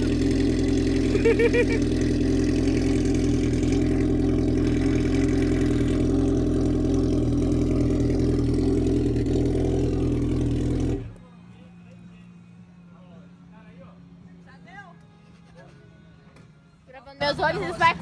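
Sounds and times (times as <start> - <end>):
car engine running: 0.0 - 11.3.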